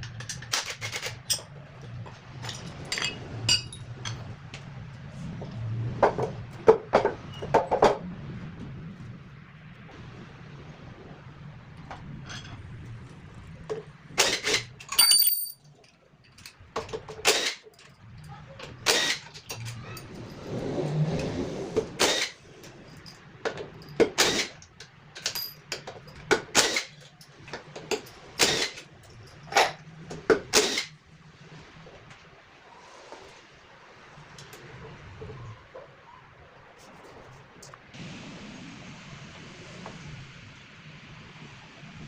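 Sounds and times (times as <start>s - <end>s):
tools and metal parts clinking: 0.0s - 4.2s, 14.8s - 18.3s, 25.2s - 29.8s.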